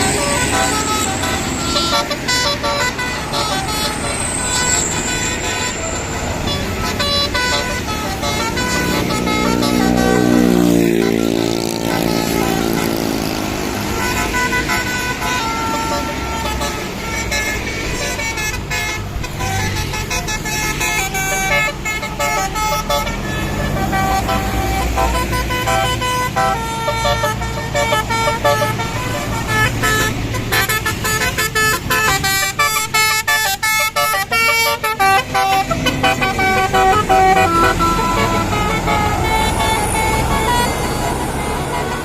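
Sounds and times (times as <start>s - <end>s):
bus engines rumbling: 0.0s - 42.0s
musical bus horns: 0.0s - 42.0s.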